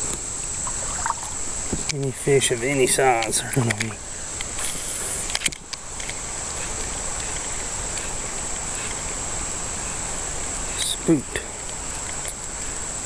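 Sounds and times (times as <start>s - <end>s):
high-pitched insect drone: 0.0s - 13.0s
brief hiss: 4.4s - 6.8s.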